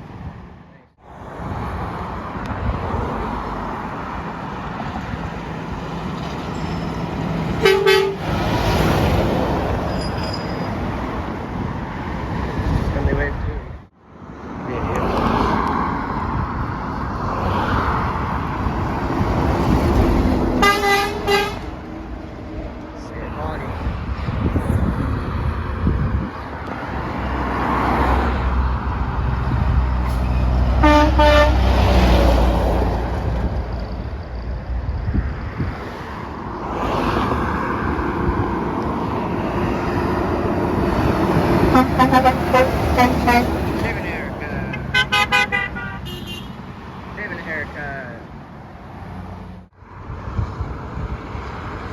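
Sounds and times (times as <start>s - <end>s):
passing road traffic: 0.0s - 51.9s
vehicle horn toots: 7.6s - 8.4s, 20.6s - 21.7s, 30.8s - 31.6s, 41.7s - 43.7s, 44.7s - 46.6s.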